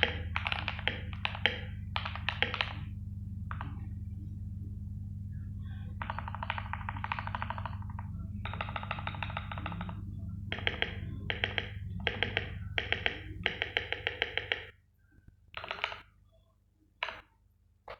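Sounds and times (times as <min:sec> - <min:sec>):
mechanical keyboard typing: 0:00.0 - 0:02.9, 0:06.0 - 0:14.7, 0:15.6 - 0:16.0
steady low hum: 0:00.0 - 0:16.4.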